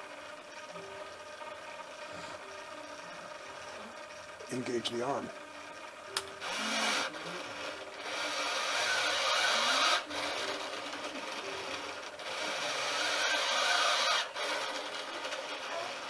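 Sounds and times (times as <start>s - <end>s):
ventilator servo motor running: 0.0s - 16.0s.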